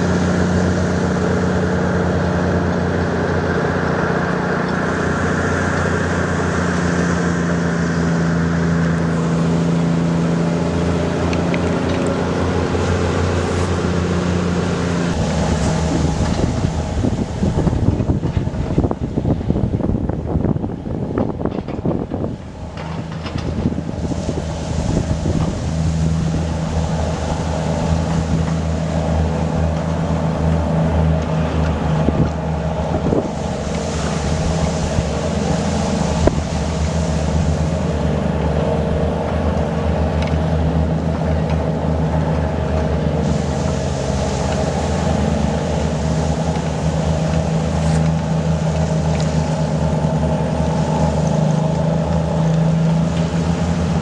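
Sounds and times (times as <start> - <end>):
wind noise: 0.0 - 39.3
bulldozer diesel engine running: 0.0 - 54.0.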